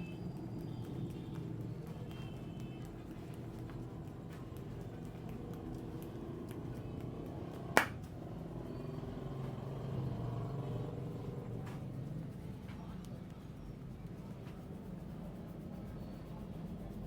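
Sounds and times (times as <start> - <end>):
steady low hum: 0.0 - 17.0
sharp snap: 7.7 - 8.1.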